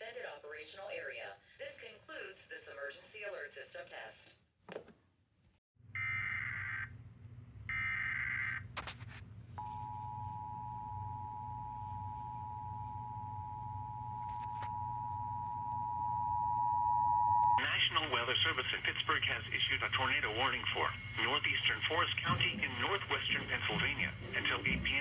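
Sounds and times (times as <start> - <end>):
low hum: 8.8 - 25.0.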